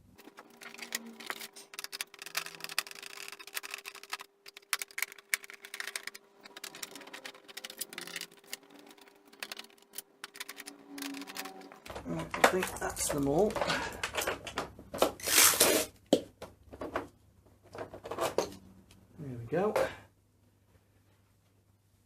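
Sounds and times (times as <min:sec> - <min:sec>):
screwdriver clicking and rattling: 0:00.2 - 0:11.8.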